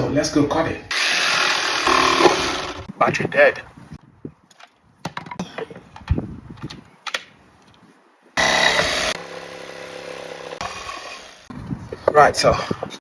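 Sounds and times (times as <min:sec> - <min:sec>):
power tool motor running: 0:00.9 - 0:02.9, 0:08.4 - 0:11.5
handling clicks and knocks: 0:04.5 - 0:07.8.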